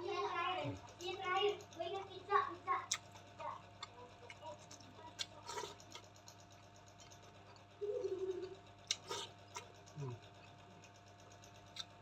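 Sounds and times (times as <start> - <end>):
steady low hum: 0.0 - 12.0
chewing clicks and smacks: 2.8 - 7.8, 8.8 - 12.0.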